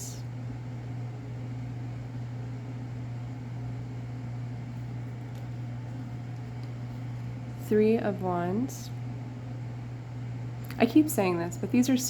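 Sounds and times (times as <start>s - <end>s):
air conditioning hum: 0.0s - 12.0s.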